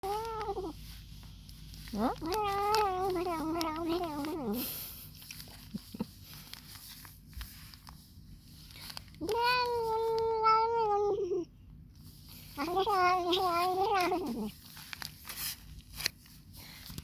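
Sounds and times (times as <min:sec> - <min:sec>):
cat meowing while eating: 0:00.0 - 0:00.9, 0:01.9 - 0:04.6, 0:09.2 - 0:11.5, 0:12.5 - 0:14.6.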